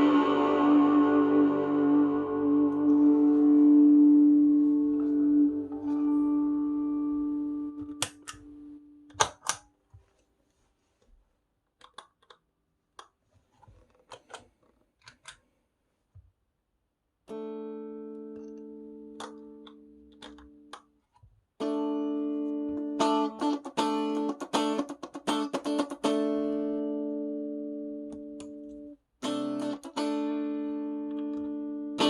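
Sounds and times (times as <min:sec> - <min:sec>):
distorted electric guitar chord: 0:00.0 - 0:08.8.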